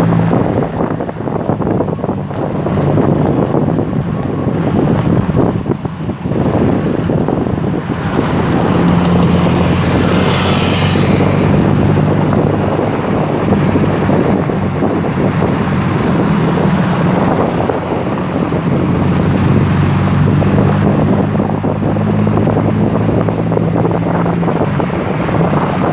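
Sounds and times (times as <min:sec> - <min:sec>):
vehicle engine hum: 0:00.0 - 0:25.9
vehicle passing: 0:00.0 - 0:25.9
wind buffeting microphone: 0:00.0 - 0:25.9.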